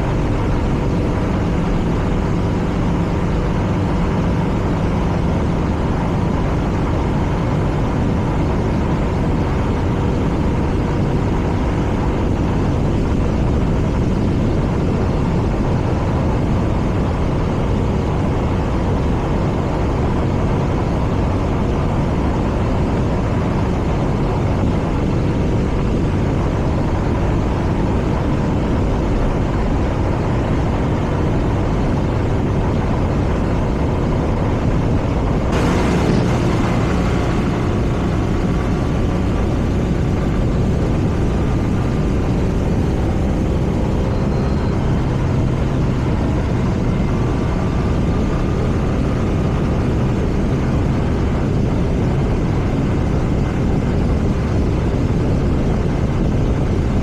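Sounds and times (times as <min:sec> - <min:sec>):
wind and road noise: 0:00.0 - 0:57.0
brief rush of noise: 0:35.5 - 0:43.6
motorcycle engine running: 0:35.5 - 0:50.6.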